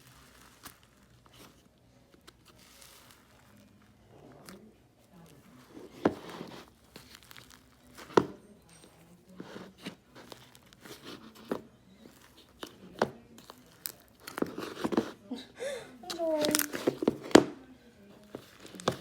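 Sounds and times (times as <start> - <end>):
slime crust crackling: 0.0 - 8.7, 9.3 - 15.2, 16.0 - 19.0.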